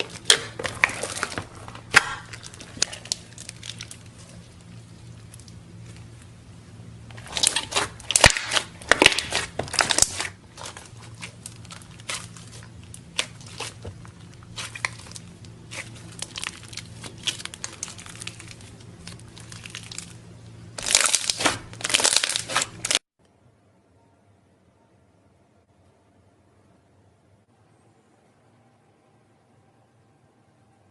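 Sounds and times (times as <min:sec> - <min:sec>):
crunchy slime crackling: 0:00.0 - 0:23.0.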